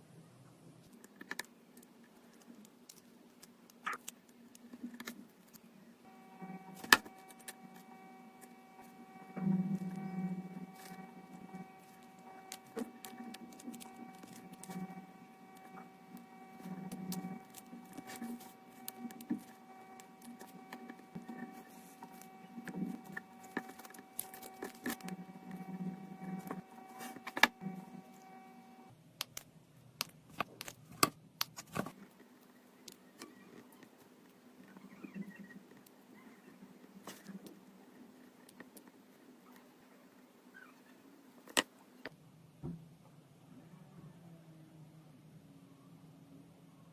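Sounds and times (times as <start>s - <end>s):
electrical hum: 0.8s - 31.0s.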